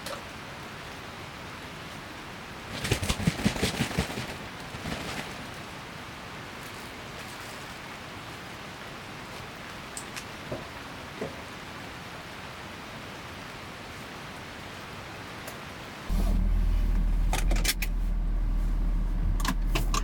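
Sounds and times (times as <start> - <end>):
heavy rain falling: 0.3 - 20.0.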